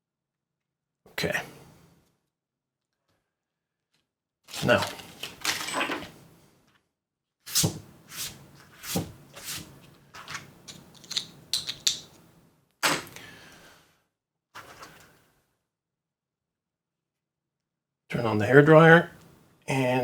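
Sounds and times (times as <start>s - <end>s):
objects clacking and knocking: 4.5s - 6.2s, 10.2s - 12.2s.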